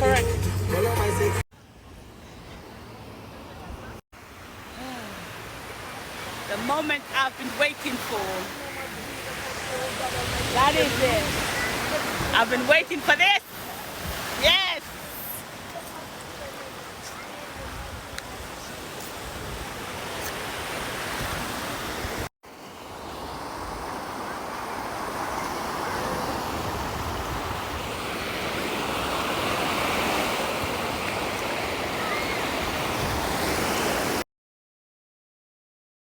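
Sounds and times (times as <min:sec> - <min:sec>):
surf washing onto beach: 0:02.1 - 0:34.2.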